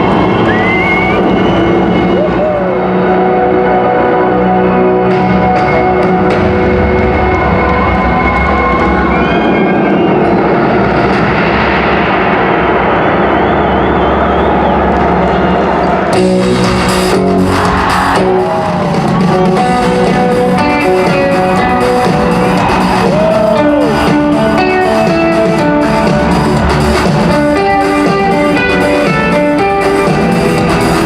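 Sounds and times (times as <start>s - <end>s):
loud rock music with guitars: 16.1s - 31.0s.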